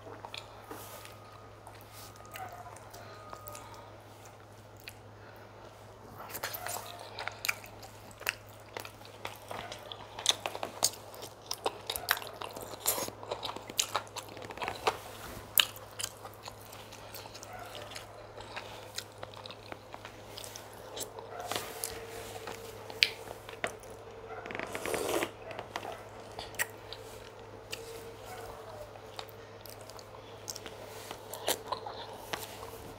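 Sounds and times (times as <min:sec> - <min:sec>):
chewing with wet mouth smacks: 0:04.7 - 0:05.1, 0:06.2 - 0:24.1, 0:25.4 - 0:32.8.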